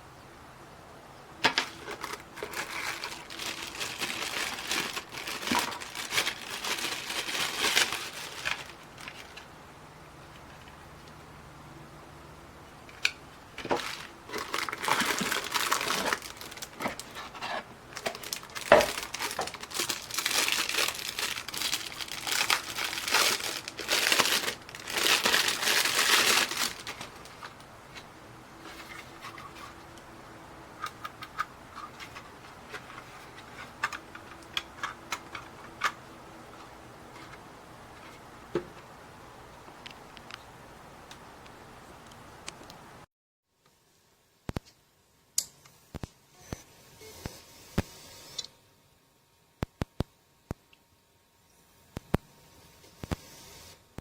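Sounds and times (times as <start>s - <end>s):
crinkling and rustling handling: 1.4s - 11.3s, 12.8s - 30.2s, 30.8s - 38.9s.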